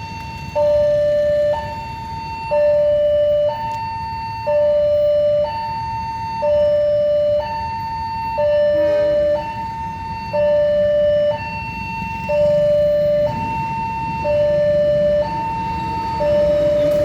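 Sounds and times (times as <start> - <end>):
two-tone level crossing alarm: 0.0 - 17.0.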